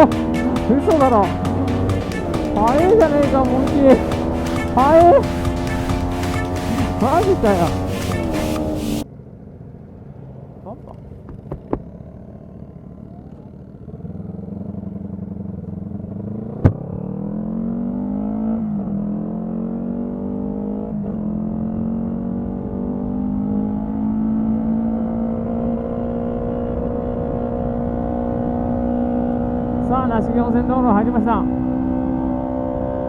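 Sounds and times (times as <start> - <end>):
motorcycle engine accelerating: 0.0 - 9.0, 11.6 - 33.0.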